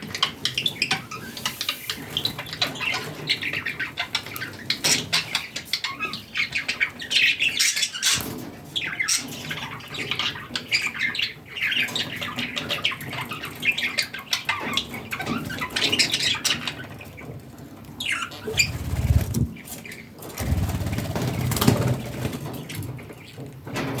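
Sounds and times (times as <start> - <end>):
budgerigars chirping and squawking: 18.0 - 22.4
low rumbling noise: 18.5 - 19.6.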